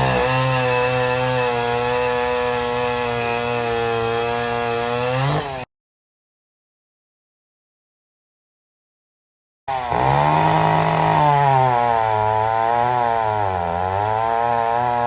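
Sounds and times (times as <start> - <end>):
chainsaw cutting wood: 0.0 - 5.7, 9.7 - 15.0.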